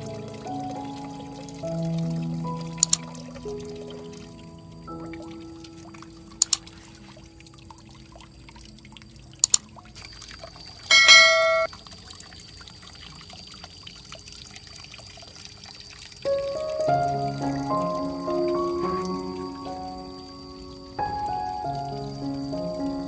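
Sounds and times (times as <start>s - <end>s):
sharp clicks: 2.8s - 3.0s, 6.4s - 6.6s, 9.4s - 9.6s
bell-like chime: 10.9s - 11.7s
faint held tone: 10.9s - 11.7s.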